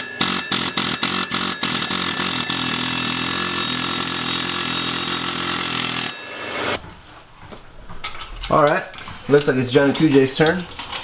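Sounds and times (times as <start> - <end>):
pneumatic air hammer hammering: 0.0 - 6.9.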